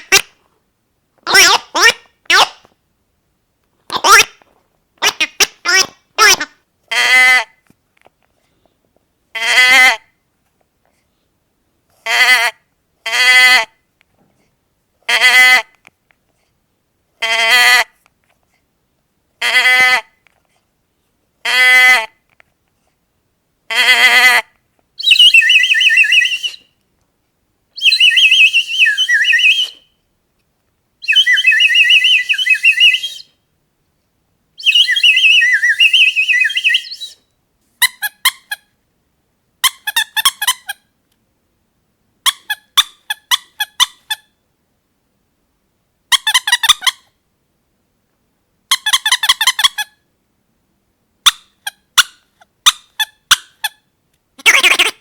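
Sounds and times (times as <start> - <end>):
harsh squawking calls: 0.0 - 0.4, 1.3 - 2.7, 3.9 - 4.4, 5.0 - 7.6, 23.7 - 26.7, 27.8 - 30.0, 31.0 - 33.3, 34.6 - 37.2, 54.4 - 55.0.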